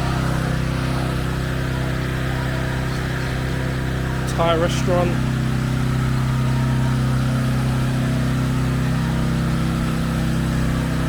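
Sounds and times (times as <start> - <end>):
engine idling: 0.0 - 11.0.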